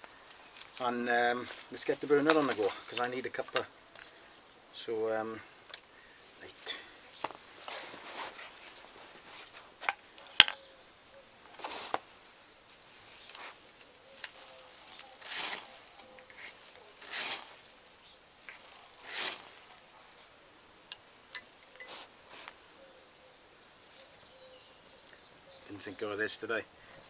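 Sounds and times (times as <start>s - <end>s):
fire striker scraping: 18.5s - 19.8s.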